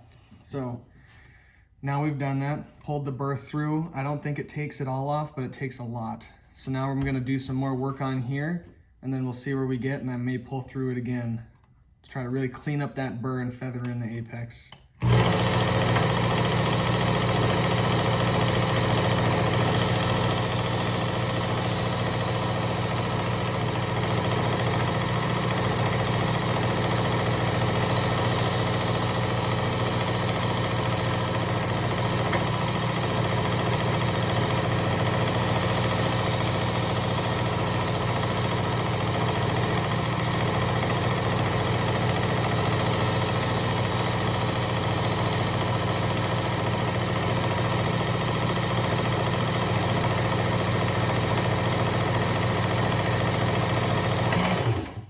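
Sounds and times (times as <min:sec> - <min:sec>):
belt sharpener running: 0:15.0 - 0:55.0.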